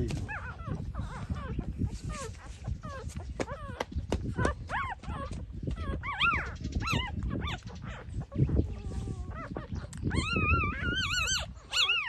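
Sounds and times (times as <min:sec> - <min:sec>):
puppies whimpering and squealing: 0:00.0 - 0:12.0.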